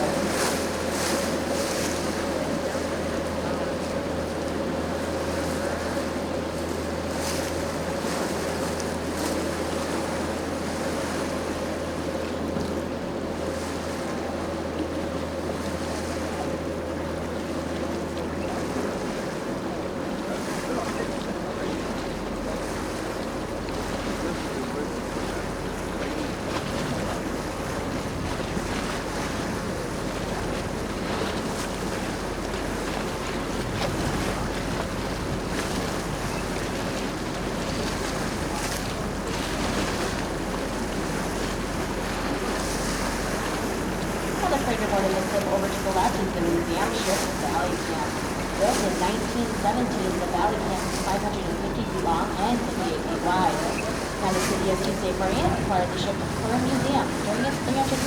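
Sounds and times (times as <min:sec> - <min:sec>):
boat engine running: 0:00.0 - 0:58.0
water washing along hull: 0:00.0 - 0:58.0
wind buffeting microphone: 0:25.6 - 0:58.0.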